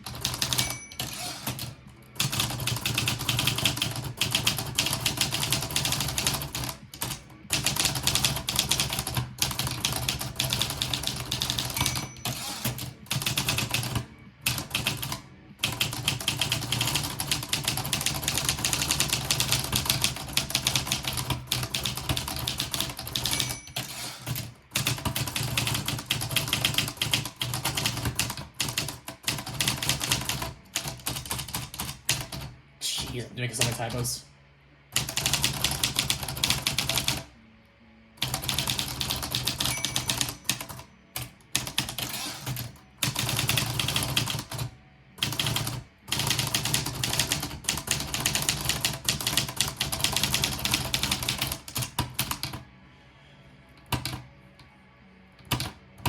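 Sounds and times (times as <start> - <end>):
typewriter bell ring: 0.0 - 3.7, 9.8 - 14.6, 21.6 - 26.0, 38.3 - 40.9
typewriter keys striking: 0.0 - 32.4, 35.0 - 37.2, 38.2 - 40.8, 41.5 - 52.5.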